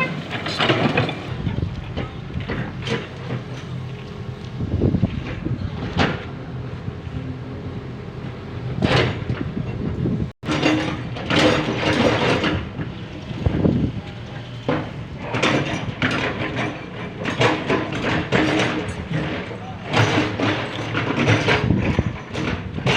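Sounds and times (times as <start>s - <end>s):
bucket clanking and scraping: 0.0s - 3.8s, 10.4s - 13.9s, 14.6s - 22.9s
excavator diesel engine running: 0.0s - 22.9s.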